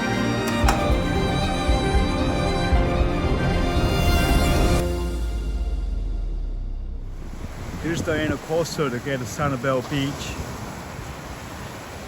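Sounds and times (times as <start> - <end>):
string music over steady beat: 0.0 - 7.5.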